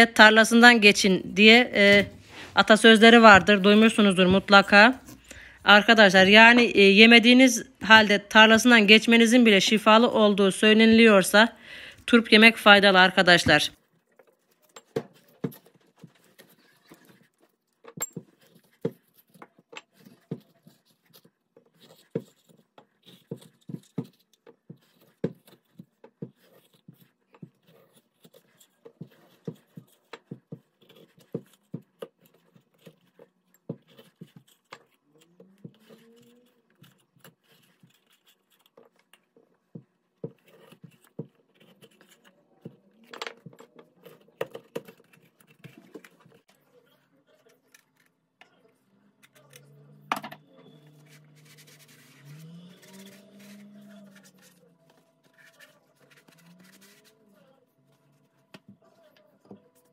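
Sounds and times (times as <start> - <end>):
knocks and clicks of hard objects: 50.1 - 50.4.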